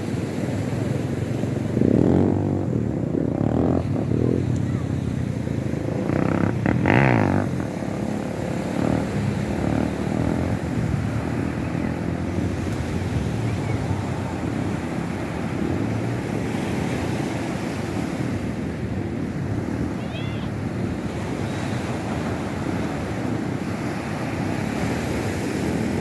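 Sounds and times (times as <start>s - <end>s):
sea surf rumbling: 0.0s - 26.0s
wind buffeting microphone: 0.0s - 26.0s.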